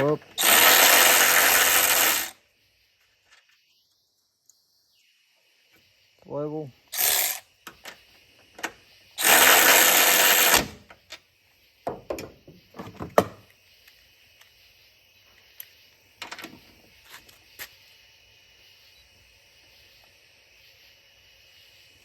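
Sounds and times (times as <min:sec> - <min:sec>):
cordless ratchet running: 0:00.4 - 0:02.3, 0:07.0 - 0:07.4, 0:09.2 - 0:10.8.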